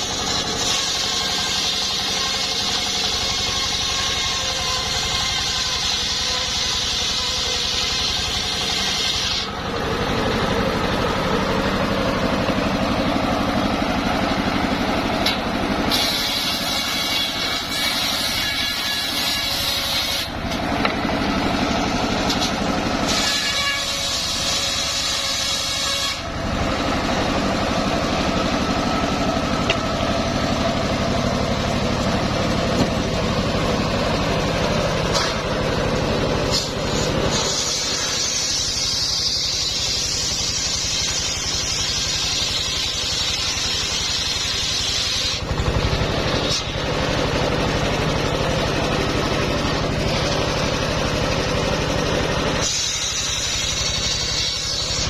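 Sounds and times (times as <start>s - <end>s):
saw blade ripping through wood: 0.0s - 9.6s, 15.2s - 21.0s, 22.1s - 26.3s, 36.5s - 45.6s, 46.3s - 46.8s, 52.6s - 55.0s
sawmill engine running: 0.0s - 55.0s.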